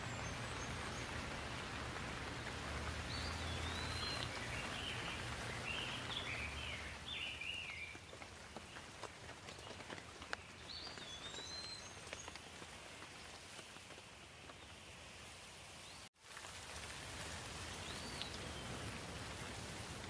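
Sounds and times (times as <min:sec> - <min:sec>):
bird chirping: 0:00.0 - 0:01.3, 0:03.0 - 0:08.2, 0:10.3 - 0:12.4
steady rainfall pattering: 0:00.0 - 0:20.0.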